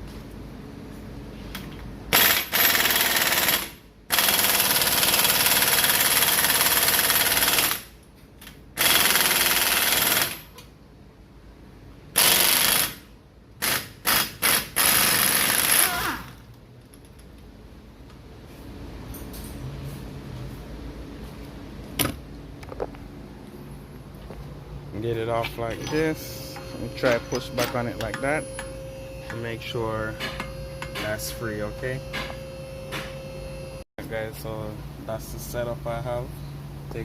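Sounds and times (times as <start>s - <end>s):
impact wrench hammering: 25.8s - 33.3s.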